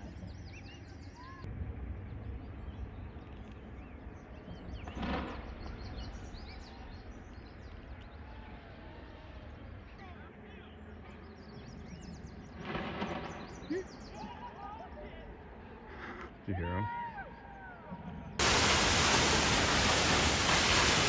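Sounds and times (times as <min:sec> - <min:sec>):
small birds chirping: 0:00.0 - 0:01.4
low wind rumble: 0:00.0 - 0:13.7, 0:17.2 - 0:21.0.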